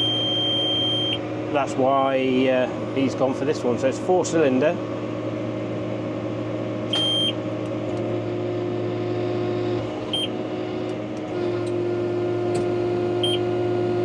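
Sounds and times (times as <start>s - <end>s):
high electronic beeps: 0.0s - 1.2s
tractor engine running: 0.0s - 14.0s.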